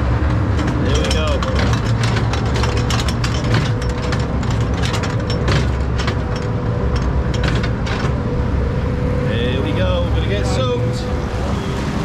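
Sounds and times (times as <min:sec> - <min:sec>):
rapid clacking and rattling: 0:00.0 - 0:08.9
low mechanical rumble: 0:00.0 - 0:12.0.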